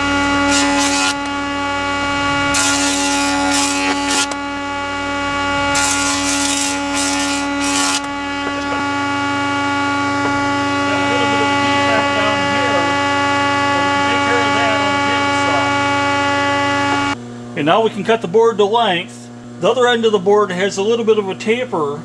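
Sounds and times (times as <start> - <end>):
board cutting noise: 0.0 - 17.2
jointer motor whine: 0.0 - 21.7.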